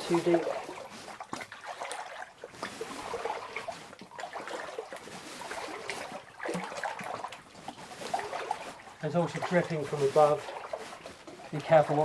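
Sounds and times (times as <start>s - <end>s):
water splashing and trickling: 0.0s - 12.0s.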